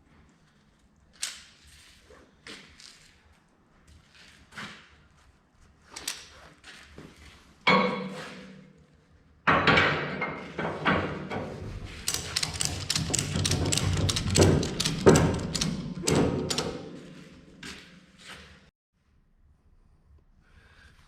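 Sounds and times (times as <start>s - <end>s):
metal strap hook clanking: 11.3s - 17.6s
strap ratchet clicking and rattling: 11.9s - 17.0s.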